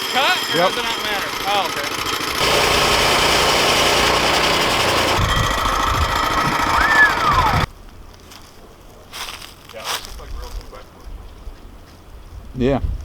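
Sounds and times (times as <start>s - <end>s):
band sawmill cutting log: 0.7s - 7.7s.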